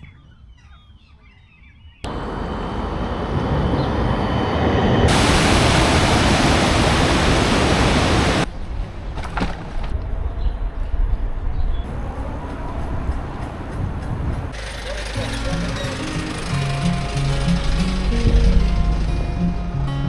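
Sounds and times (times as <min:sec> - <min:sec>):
faint bird chirps: 0:00.0 - 0:02.1
waterfall roaring: 0:05.1 - 0:08.5.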